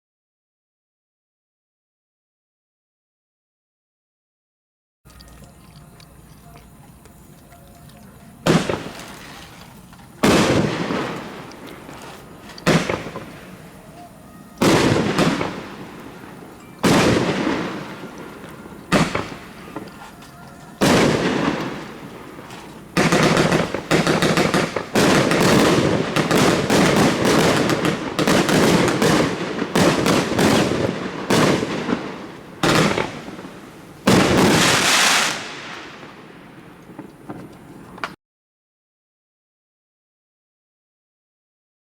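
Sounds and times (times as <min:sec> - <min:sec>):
fireworks bangs: 0:08.2 - 0:38.2.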